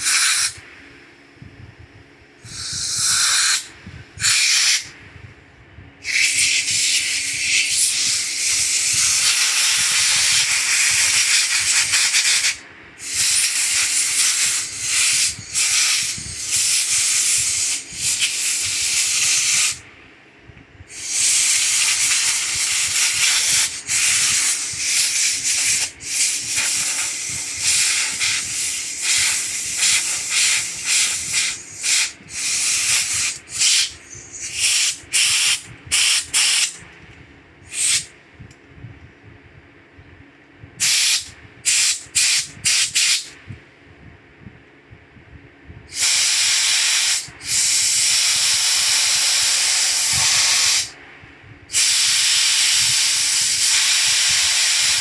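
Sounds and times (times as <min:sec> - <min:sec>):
pressurised spray hissing: 0:00.0 - 0:00.6, 0:02.5 - 0:04.9, 0:06.0 - 0:19.8, 0:20.9 - 0:36.8, 0:37.7 - 0:38.1, 0:40.8 - 0:43.3, 0:45.9 - 0:50.9, 0:51.7 - 0:55.0.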